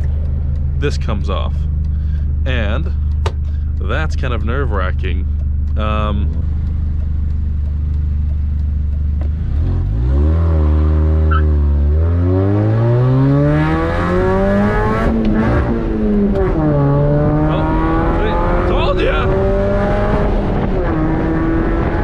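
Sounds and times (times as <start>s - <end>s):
car engine revving through gears: 0.0s - 22.0s.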